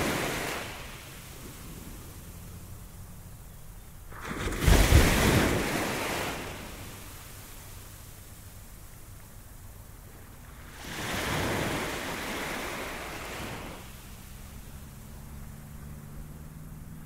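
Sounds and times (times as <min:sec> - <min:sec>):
ocean surf rumble: 0:00.0 - 0:16.8
wave breaking: 0:04.1 - 0:07.2.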